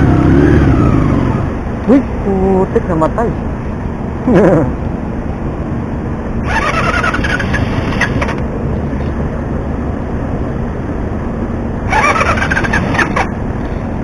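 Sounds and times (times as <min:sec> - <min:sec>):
motorcycle engine revving: 0:00.0 - 0:02.0, 0:06.4 - 0:08.4, 0:11.9 - 0:13.8.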